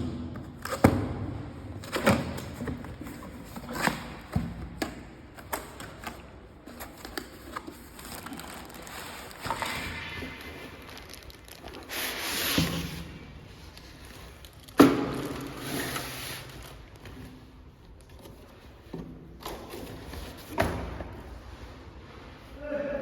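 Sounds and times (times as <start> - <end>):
packaging rubbing and scraping: 6.0 - 17.4.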